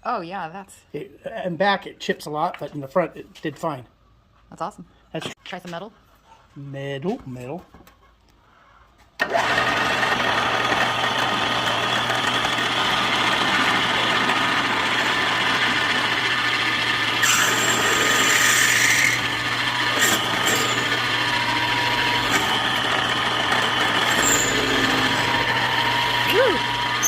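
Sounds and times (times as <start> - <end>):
power drill boring into metal: 9.2 - 27.0.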